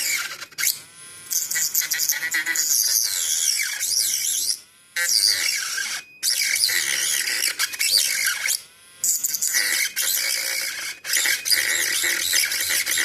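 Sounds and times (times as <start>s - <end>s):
rotary grinder cutting plastic: 0.0s - 13.0s.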